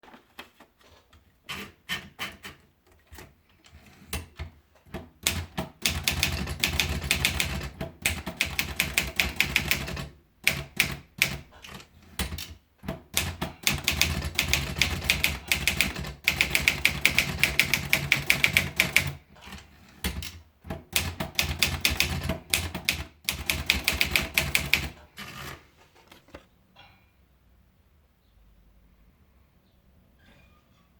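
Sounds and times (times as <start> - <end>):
manual typewriter keystrokes: 1.5 - 25.6.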